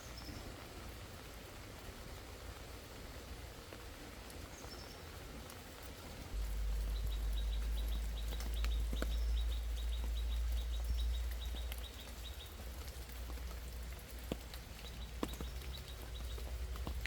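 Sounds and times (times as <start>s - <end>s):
steady low rumble: 6.3s - 12.9s
drops ticking: 6.4s - 17.0s.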